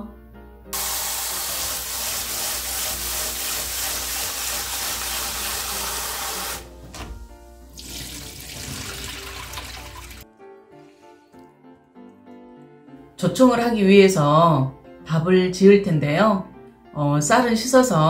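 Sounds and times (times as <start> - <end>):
soft background music: 0.0 - 18.0
tap water running into sink: 0.8 - 10.2.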